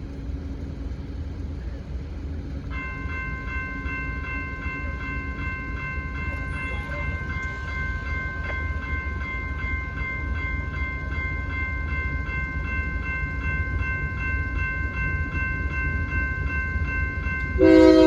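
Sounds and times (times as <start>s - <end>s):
low rumble of a train: 0.0s - 18.0s
railroad crossing bell ringing: 0.0s - 18.0s
locomotive air horn chord: 17.6s - 18.0s.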